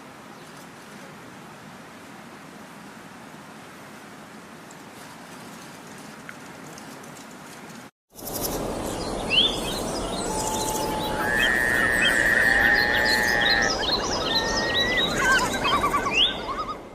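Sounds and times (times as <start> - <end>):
outdoor background hiss: 0.0 - 16.9
birds chirping and calling: 8.2 - 16.9
long steady whistle: 9.4 - 15.6.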